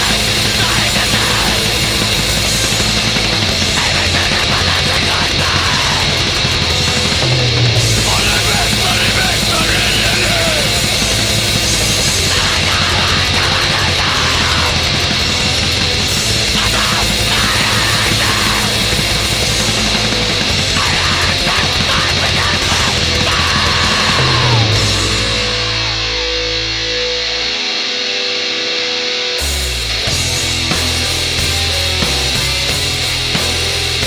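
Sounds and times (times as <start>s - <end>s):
harsh yelled vocals: 0.0s - 26.6s
distorted guitars and drums: 0.0s - 34.0s.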